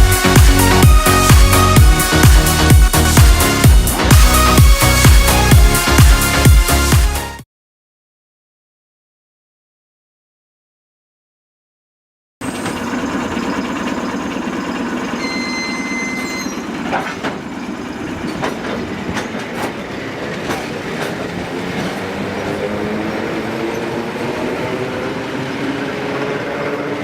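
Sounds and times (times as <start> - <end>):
train rumbling by: 0.0 - 6.1, 12.4 - 27.0
wheels squealing: 12.4 - 27.0.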